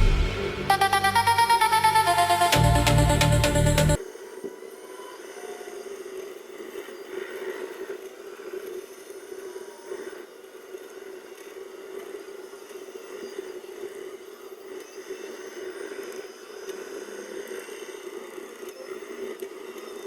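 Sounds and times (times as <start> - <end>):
electronic music: 0.0 - 4.0.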